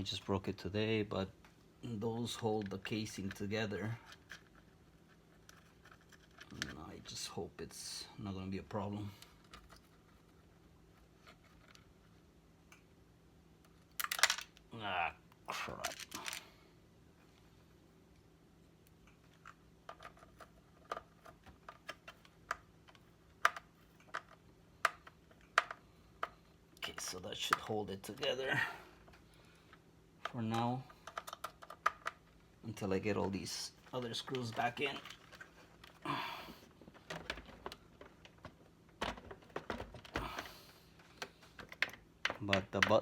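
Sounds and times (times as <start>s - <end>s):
plastic casing clicks and knocks: 36.9s - 40.5s, 41.2s - 43.0s.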